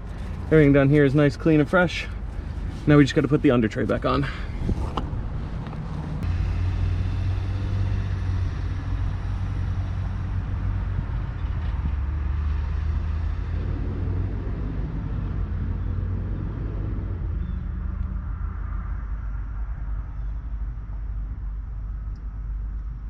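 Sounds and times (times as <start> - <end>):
low mechanical rumble: 0.0 - 23.0.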